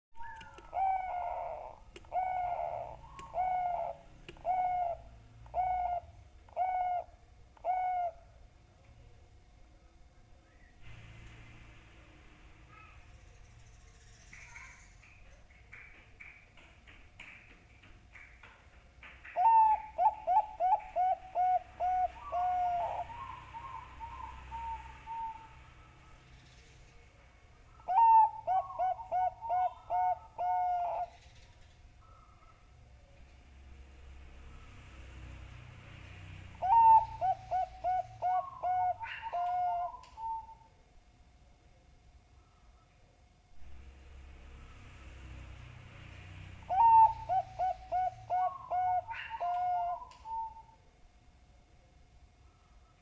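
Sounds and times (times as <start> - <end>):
dove cooing: 0.2 - 8.3, 19.4 - 26.2, 27.7 - 31.3, 36.1 - 40.7, 46.6 - 50.8.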